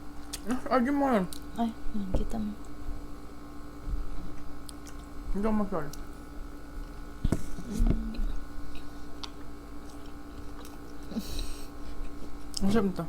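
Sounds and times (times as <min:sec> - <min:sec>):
low electrical hum: 0:00.0 - 0:13.0
person chewing: 0:04.2 - 0:05.1, 0:06.8 - 0:12.6
person humming: 0:07.6 - 0:08.4.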